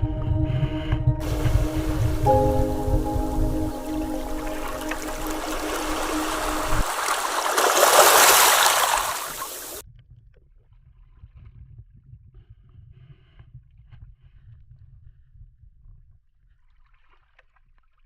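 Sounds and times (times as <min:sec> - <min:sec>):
faint low rumble: 0:00.0 - 0:07.0
sea water rushing: 0:01.2 - 0:09.8.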